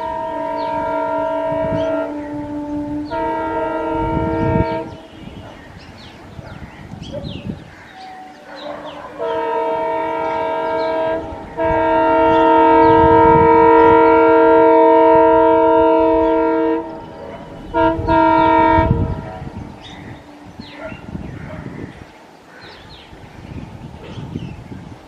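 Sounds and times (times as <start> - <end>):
diesel locomotive horn blasts: 0.0 - 5.6, 8.2 - 21.5.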